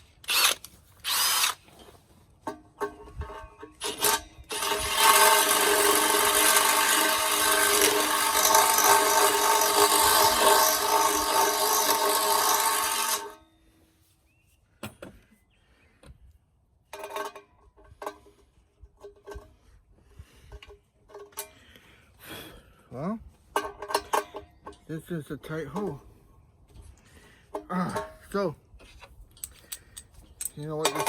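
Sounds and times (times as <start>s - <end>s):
electric drill drilling steel: 0.2s - 1.6s, 3.8s - 13.4s.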